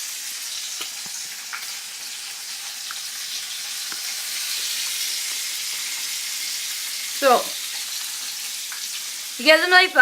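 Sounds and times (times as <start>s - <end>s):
bacon sizzling in a pan: 0.0s - 10.0s
fat popping: 0.6s - 5.9s.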